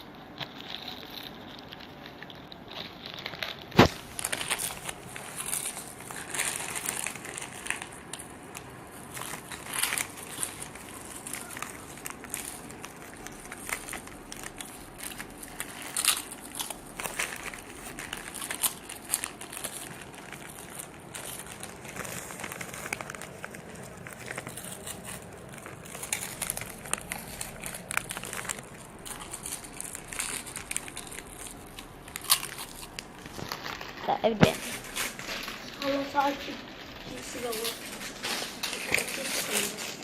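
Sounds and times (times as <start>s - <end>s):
crisp packets crinkling: 0.0s - 40.0s
crisps crunched and chewed: 0.0s - 40.0s.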